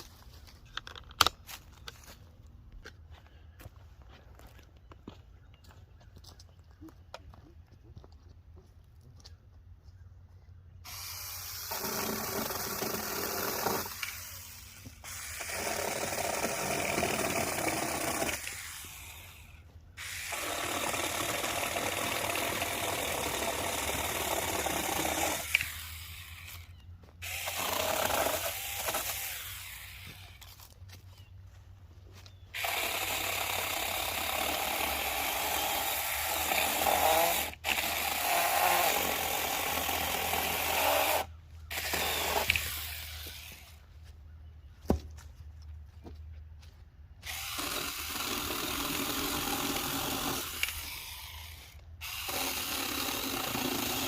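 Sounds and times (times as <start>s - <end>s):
handheld chainsaw cutting wood: 10.8s - 30.8s, 32.5s - 43.9s, 47.2s - 54.0s.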